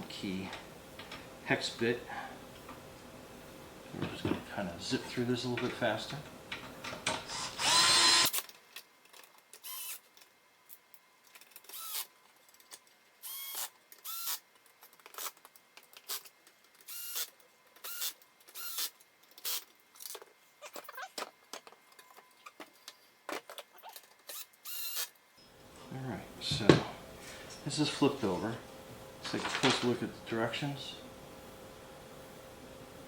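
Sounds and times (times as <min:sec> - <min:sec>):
power drill whining in bursts: 0:07.3 - 0:08.4, 0:13.2 - 0:14.4, 0:16.9 - 0:17.3.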